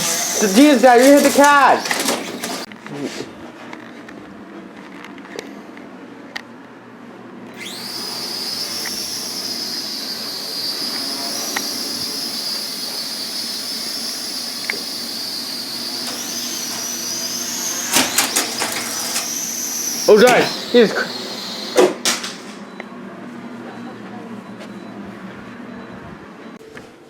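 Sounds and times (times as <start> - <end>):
toy drone motors whining: 0.0 - 2.7, 7.6 - 22.5.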